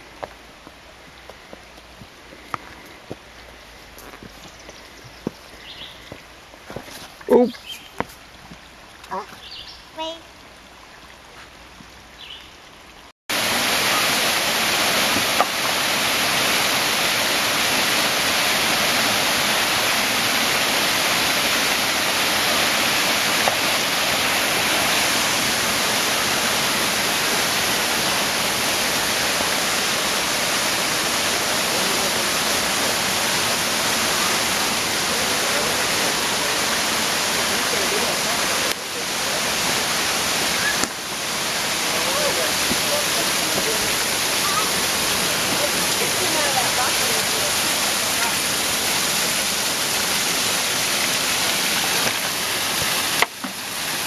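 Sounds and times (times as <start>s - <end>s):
waterfall rushing: 13.3s - 54.0s.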